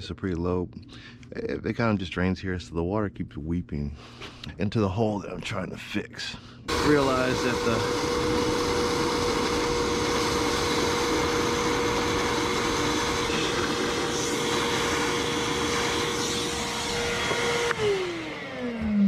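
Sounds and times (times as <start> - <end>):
shop vacuum whining: 6.7 - 19.0.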